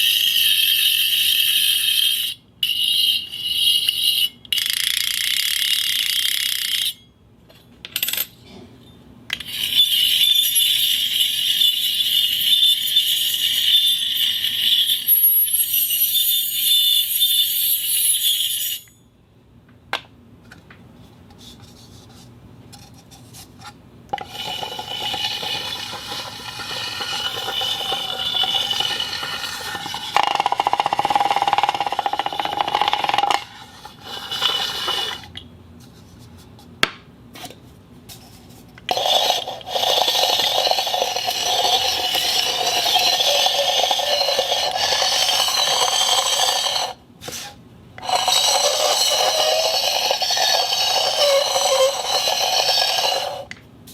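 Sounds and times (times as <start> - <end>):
object scraping on concrete floor: 24.2 - 36.2, 38.1 - 53.5.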